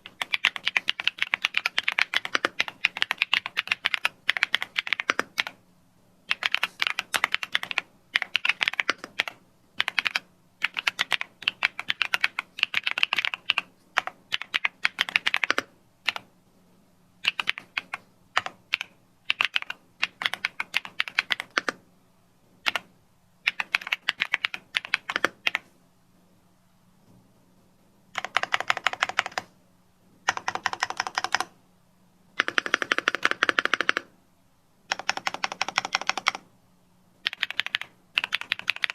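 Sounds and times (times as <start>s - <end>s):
mechanical keyboard typing: 0.0s - 5.6s, 6.3s - 16.3s, 17.2s - 21.8s, 22.6s - 25.7s, 28.2s - 29.5s, 30.2s - 31.6s, 32.4s - 34.1s, 34.9s - 36.5s, 37.2s - 38.9s.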